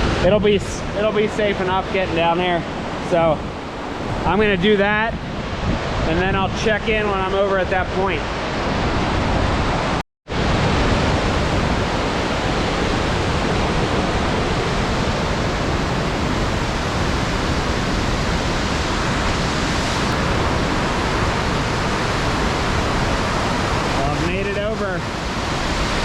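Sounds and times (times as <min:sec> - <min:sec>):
waterfall rushing: 0:11.3 - 0:26.0.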